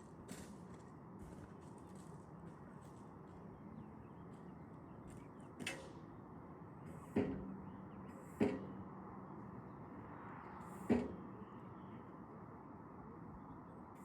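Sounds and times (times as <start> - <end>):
outdoor background rush: 0.0 - 14.0
sharp knocks: 7.1 - 7.6.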